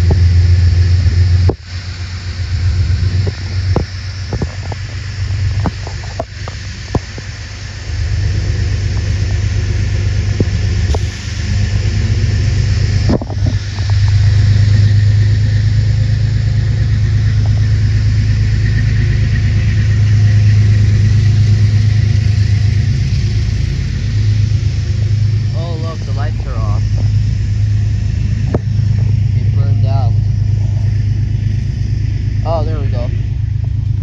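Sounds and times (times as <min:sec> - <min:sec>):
vehicle low rumble: 0:00.0 - 0:34.0.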